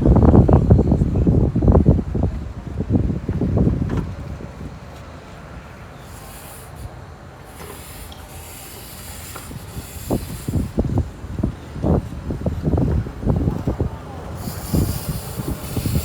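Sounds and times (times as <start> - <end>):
wind buffeting microphone: 0.0 - 16.0
steady high hiss: 5.9 - 11.2.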